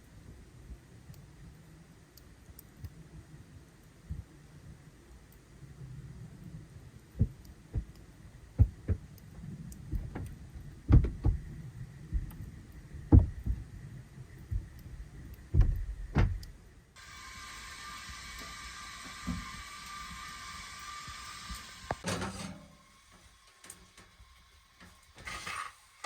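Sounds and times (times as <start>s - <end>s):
steady hiss: 0.0s - 26.0s
dull thumps and knocks: 10.9s - 11.5s, 13.1s - 13.6s.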